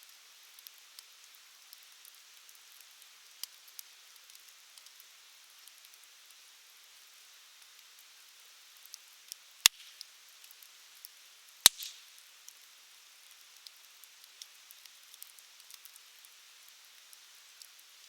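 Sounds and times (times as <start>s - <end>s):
campfire crackling: 8.8s - 18.0s
sharp fire pops: 9.6s - 10.1s, 11.6s - 12.3s.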